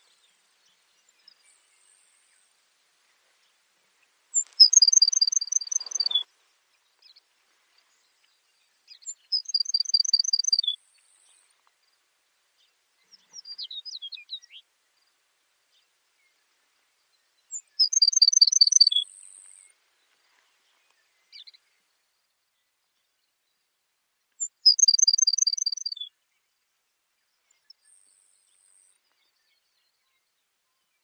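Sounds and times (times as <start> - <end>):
sparrow singing: 4.3 - 6.3, 8.9 - 11.5, 17.5 - 19.7, 24.4 - 26.1.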